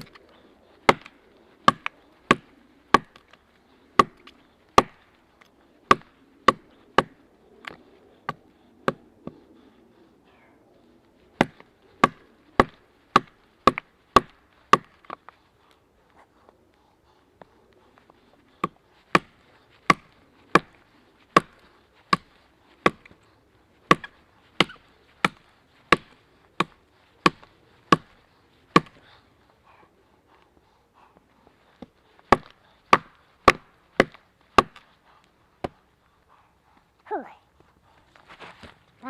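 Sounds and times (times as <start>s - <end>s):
axe chopping wood: 0.9s - 3.2s, 4.0s - 5.1s, 5.9s - 7.2s, 11.4s - 15.2s, 18.6s - 23.2s, 23.8s - 28.1s, 28.7s - 29.0s, 31.8s - 34.9s.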